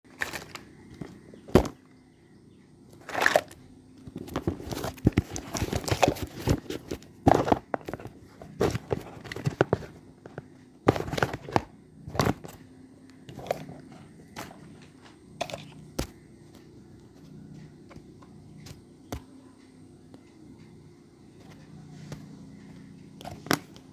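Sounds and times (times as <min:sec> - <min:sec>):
packaging crinkling and tearing: 0:00.1 - 0:00.6.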